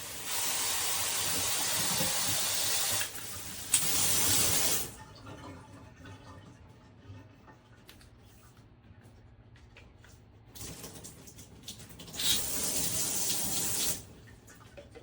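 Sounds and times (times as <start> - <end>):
water spraying from shower head: 0.0 - 4.9.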